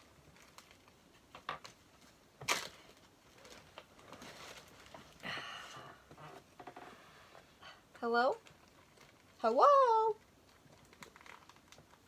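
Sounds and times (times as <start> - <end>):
plastic items clicking and crinkling: 0.0 - 5.3, 8.3 - 9.5, 10.1 - 12.0.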